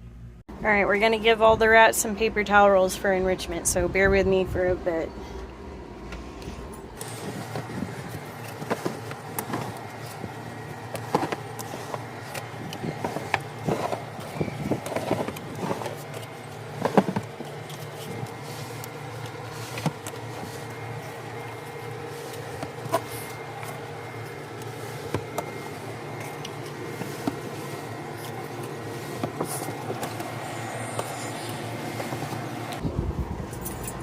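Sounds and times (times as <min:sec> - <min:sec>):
steady machine hum: 0:00.0 - 0:34.0
cardboard rolls rustling and knocking: 0:07.0 - 0:30.4.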